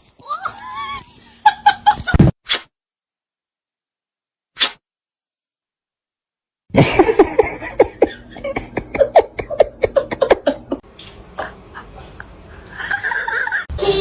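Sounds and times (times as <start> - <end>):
person laughing hard: 6.7 - 10.8.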